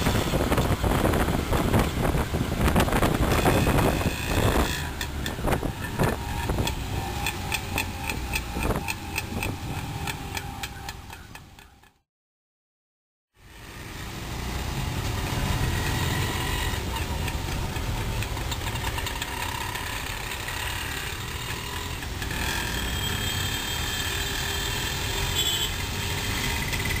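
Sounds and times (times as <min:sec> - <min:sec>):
vehicle engines running and idling: 0:00.0 - 0:12.0, 0:13.4 - 0:27.0.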